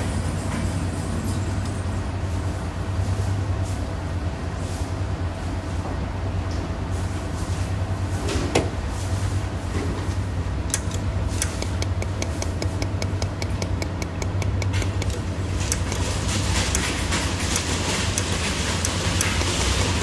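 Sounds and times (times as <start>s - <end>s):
steady low hum: 0.0s - 20.0s
welding machine sharp clicks: 10.6s - 20.0s.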